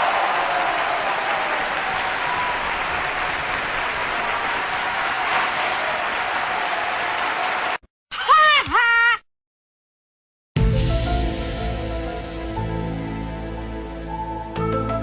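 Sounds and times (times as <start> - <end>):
audience applauding: 0.0 - 7.8.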